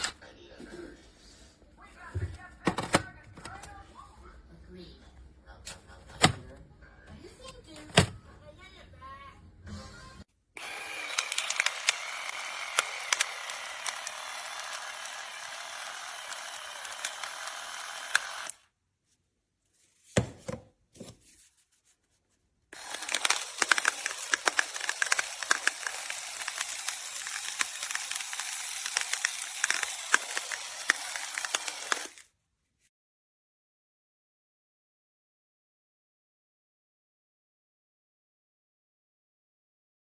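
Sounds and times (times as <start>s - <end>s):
electric pepper grinder crushing: 10.6s - 18.7s, 22.8s - 32.3s.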